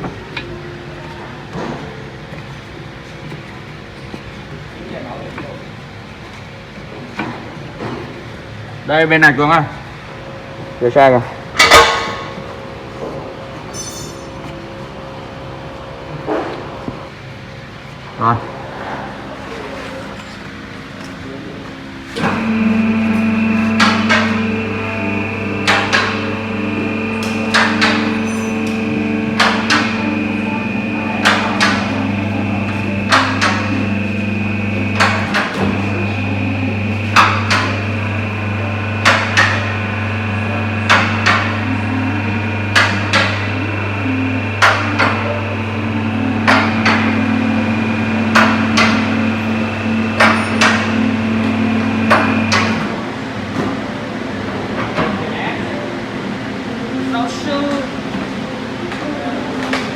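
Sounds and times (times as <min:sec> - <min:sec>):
steady machine hum: 0:21.9 - 0:54.8.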